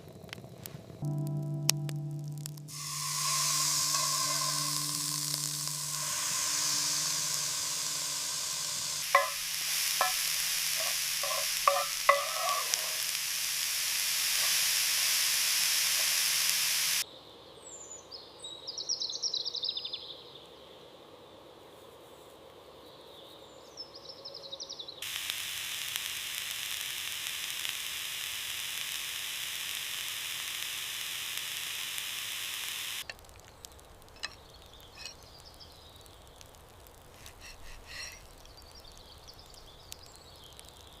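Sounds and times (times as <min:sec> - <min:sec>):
food sizzling in a pan: 0:01.0 - 0:17.0, 0:25.0 - 0:41.0
utensil clinking in a pan: 0:09.1 - 0:13.1, 0:35.0 - 0:35.2.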